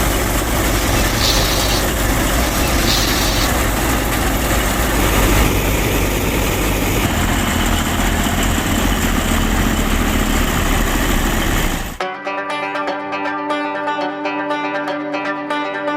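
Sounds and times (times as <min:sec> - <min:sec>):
machine whirring and humming: 0:00.0 - 0:12.0
plucked-string music: 0:12.0 - 0:15.9.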